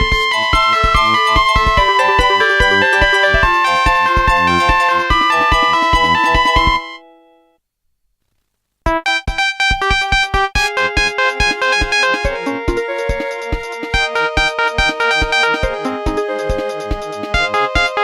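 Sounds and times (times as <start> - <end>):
synth ringtone melody with beat: 0.0 - 7.4, 8.9 - 18.0.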